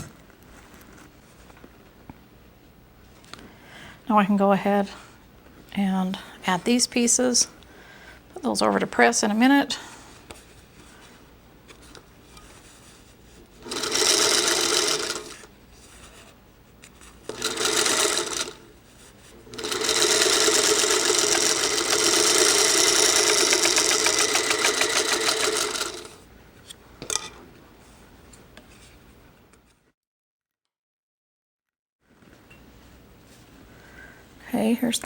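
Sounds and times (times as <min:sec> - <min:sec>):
electric sewing machine stitching: 0:13.6 - 0:15.5, 0:17.2 - 0:18.8, 0:19.4 - 0:26.2.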